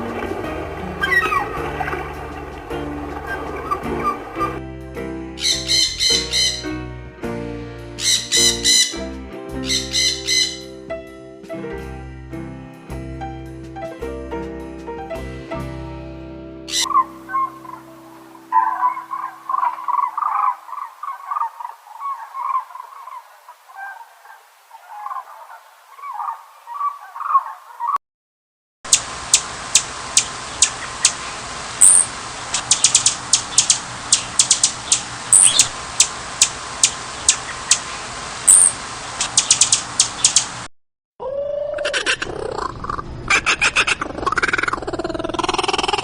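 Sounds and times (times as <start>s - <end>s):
high bird chirps and clicks: 5.4s - 6.6s, 8.0s - 9.0s, 9.7s - 10.6s, 28.9s - 40.6s
bird calls sliding in pitch: 5.4s - 6.7s, 8.0s - 9.0s, 9.6s - 10.6s
birds chattering: 5.4s - 6.7s, 8.0s - 9.0s, 9.6s - 10.6s, 16.7s - 23.3s, 30.2s - 40.5s
steady hiss: 28.9s - 40.7s.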